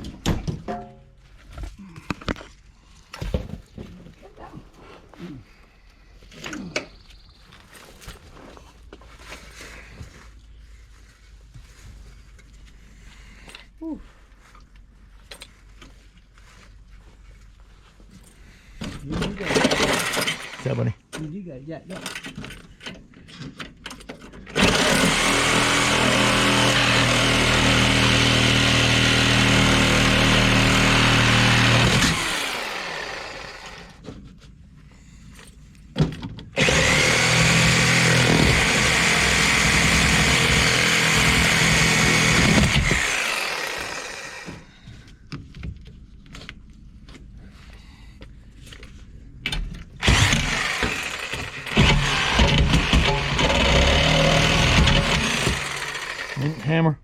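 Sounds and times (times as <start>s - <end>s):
electric power tool running: 19.4s - 20.8s, 24.6s - 34.0s, 36.6s - 44.6s, 50.0s - 56.8s.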